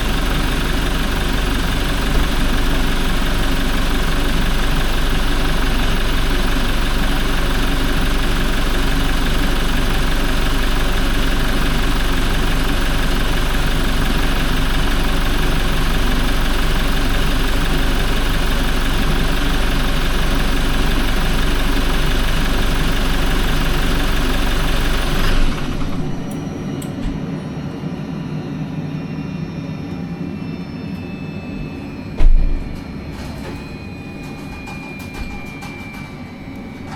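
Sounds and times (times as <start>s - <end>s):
diesel engine idling: 0.0s - 27.2s.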